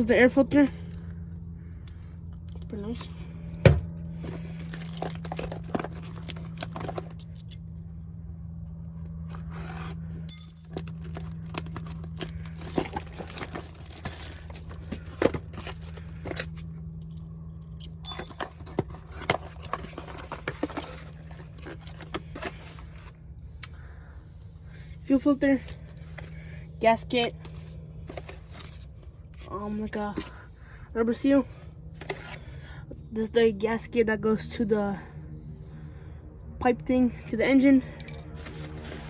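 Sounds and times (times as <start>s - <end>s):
plastic packaging crinkling: 4.3s - 7.2s, 10.8s - 16.0s
small parts clinking: 10.3s - 12.0s, 16.2s - 19.0s.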